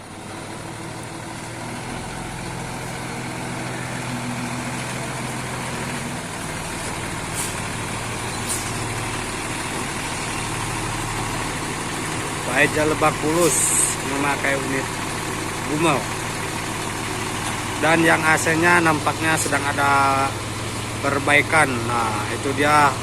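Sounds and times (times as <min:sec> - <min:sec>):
diesel bus engine idling: 0:00.0 - 0:23.0.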